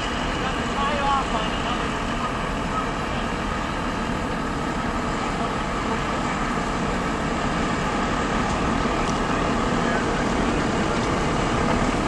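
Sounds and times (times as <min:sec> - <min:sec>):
truck engines running: 0:00.0 - 0:12.0.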